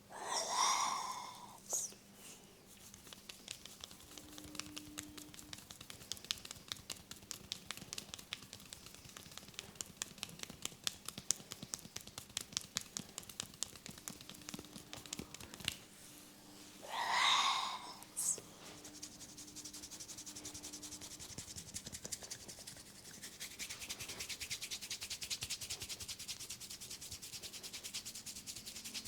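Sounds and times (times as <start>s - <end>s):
fingers rubbing hair crackling: 2.6s - 15.8s, 16.8s - 29.0s.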